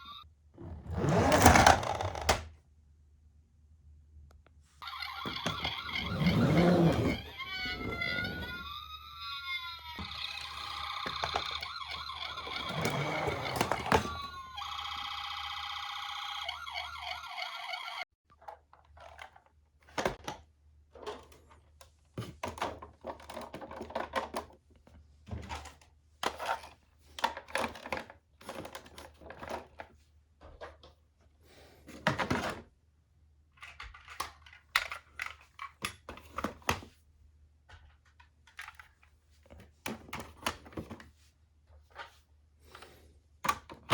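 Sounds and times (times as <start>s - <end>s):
toy electronic sirens: 0.0s - 0.2s, 4.8s - 18.1s.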